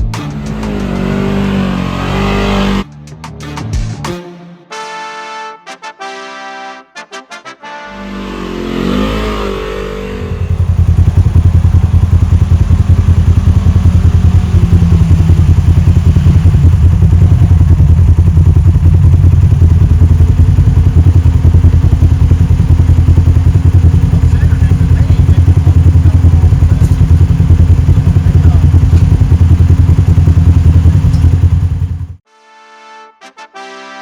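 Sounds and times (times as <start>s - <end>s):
atv engine running: 0.0s - 2.8s, 8.0s - 32.2s.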